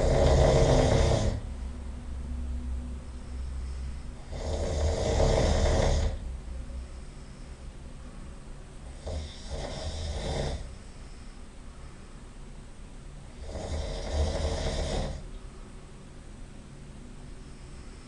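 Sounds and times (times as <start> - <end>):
man snoring loudly: 0.0 - 1.4, 4.2 - 6.2, 8.9 - 10.7, 13.3 - 15.2.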